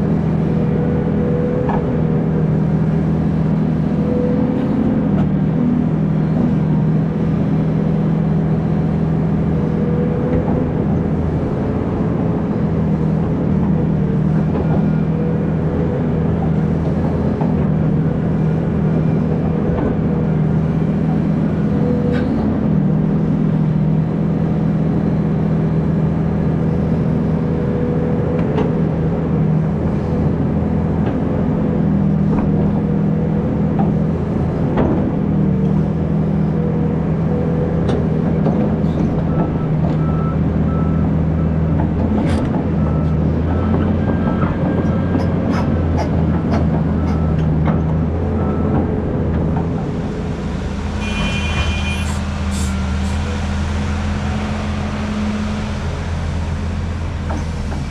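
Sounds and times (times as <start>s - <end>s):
excavator diesel engine running: 0.0s - 57.9s.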